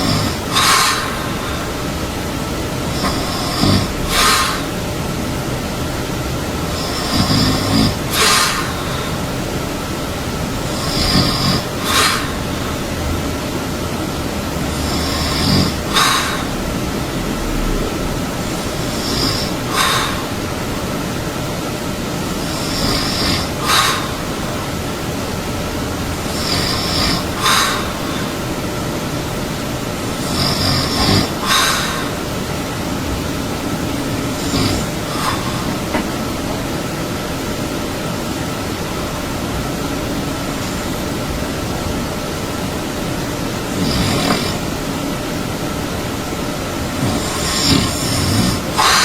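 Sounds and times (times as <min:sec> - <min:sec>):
hiss and puff of air: 0:00.0 - 0:01.9, 0:02.8 - 0:05.1, 0:06.8 - 0:09.3, 0:10.7 - 0:12.9, 0:14.9 - 0:20.9, 0:22.4 - 0:24.7, 0:26.3 - 0:28.5, 0:34.3 - 0:36.4, 0:47.0 - 0:49.0
person snoring: 0:00.0 - 0:01.9, 0:02.8 - 0:04.8, 0:06.7 - 0:09.3, 0:10.6 - 0:13.0, 0:14.6 - 0:20.8, 0:22.2 - 0:24.7, 0:26.2 - 0:28.5, 0:30.1 - 0:32.4, 0:34.2 - 0:36.4, 0:43.7 - 0:44.8, 0:46.9 - 0:49.0
faint breath: 0:00.0 - 0:02.0, 0:02.8 - 0:05.0, 0:06.7 - 0:09.4, 0:10.6 - 0:13.0, 0:14.9 - 0:21.0, 0:22.2 - 0:25.0, 0:26.3 - 0:28.6, 0:30.2 - 0:32.4, 0:34.3 - 0:36.6, 0:47.0 - 0:49.0
steady hiss: 0:00.0 - 0:49.0.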